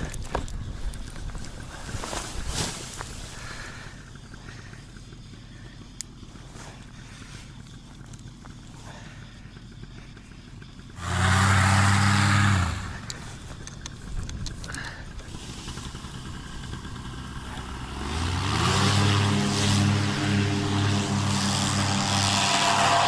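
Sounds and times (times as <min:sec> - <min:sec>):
paramotor engine revving: 0:01.1 - 0:23.0.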